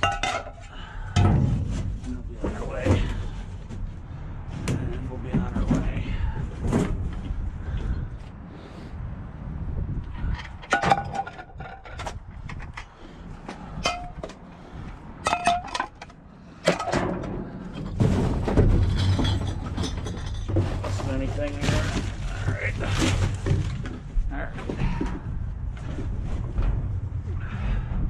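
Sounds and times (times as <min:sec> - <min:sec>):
metal pans clanking: 0:00.0 - 0:00.6, 0:15.2 - 0:16.1
rumbling rustling noise: 0:00.8 - 0:28.0.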